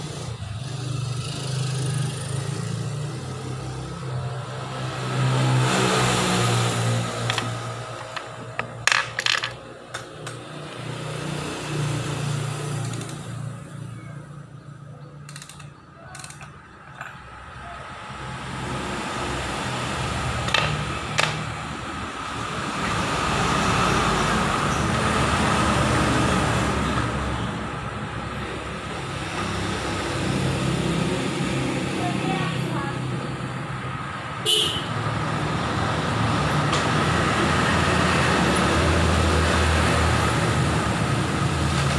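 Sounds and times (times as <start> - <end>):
sharp metallic clicks: 15.2 - 17.2.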